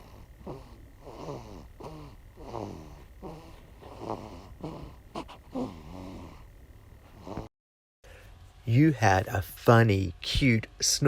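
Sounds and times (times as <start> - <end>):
baby snoring: 0.0 - 7.5.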